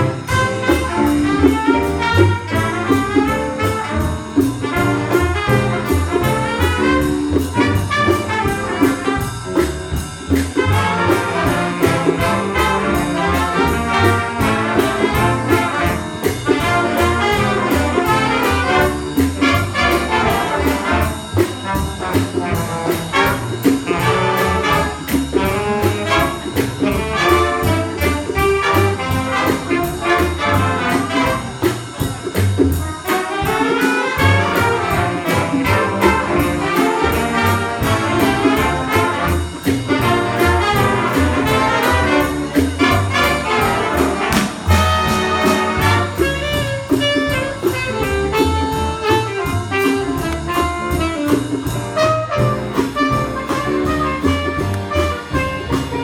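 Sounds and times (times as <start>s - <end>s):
drum kit beat: 0.0s - 56.0s
jazz big band playing: 0.0s - 56.0s.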